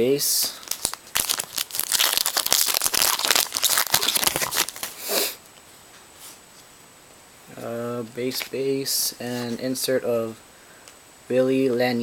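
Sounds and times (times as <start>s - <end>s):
wrapper crinkling and tearing: 0.6s - 5.0s.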